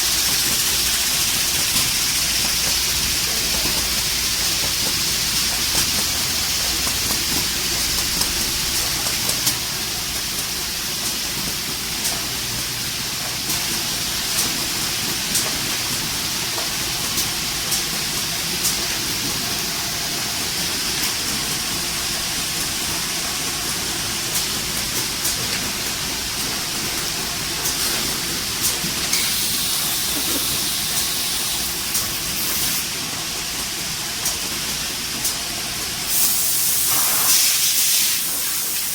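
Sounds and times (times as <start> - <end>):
steady air hiss: 27.4 - 32.9, 36.1 - 38.9.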